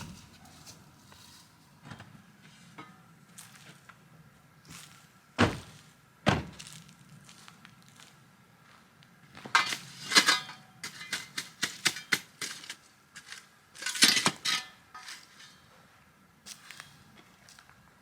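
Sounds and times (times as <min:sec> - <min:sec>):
objects clattering and clinking: 0:09.5 - 0:12.3.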